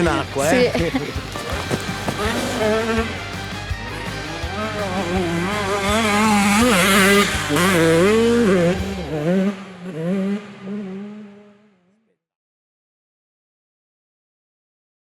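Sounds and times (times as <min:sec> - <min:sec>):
motorcycle engine revving: 0:00.0 - 0:11.9.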